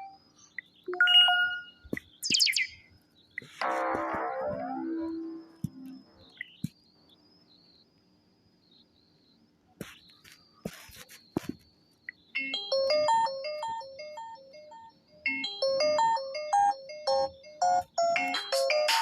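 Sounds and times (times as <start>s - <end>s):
phone ringtone melody: 12.4s - 19.0s.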